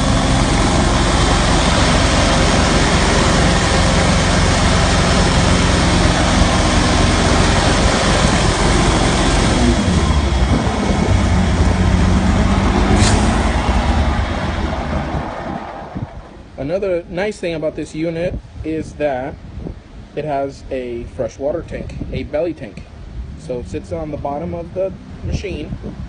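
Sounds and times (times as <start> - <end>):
loud steady hiss: 0.0 - 14.6
engine hum: 0.0 - 17.2
short high hiss: 12.9 - 13.5.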